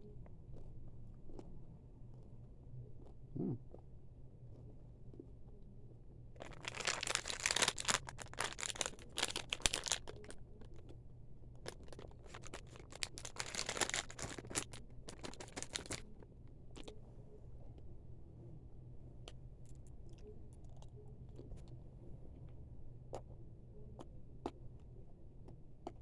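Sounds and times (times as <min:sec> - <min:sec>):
plastic bag crinkling: 0:06.4 - 0:10.7, 0:11.6 - 0:16.2.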